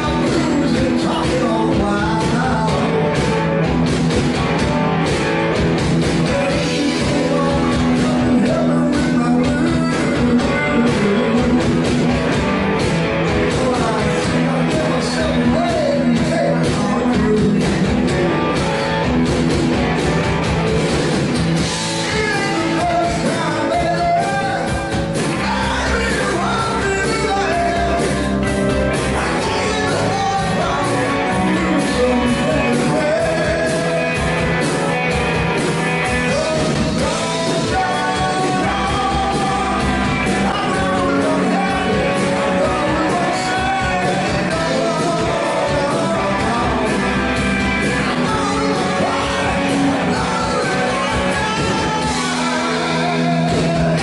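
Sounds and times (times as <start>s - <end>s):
electric guitar: 0.0s - 54.0s
lead singer: 0.0s - 54.0s
rock band playing live: 0.0s - 54.0s.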